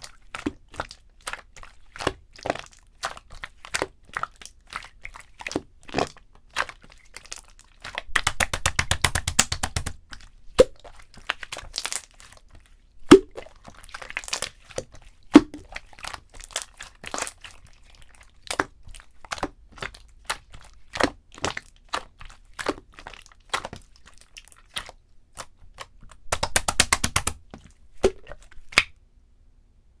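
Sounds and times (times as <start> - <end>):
slime squeezed by hand: 13.0 - 28.9
slime crackling: 15.3 - 28.9.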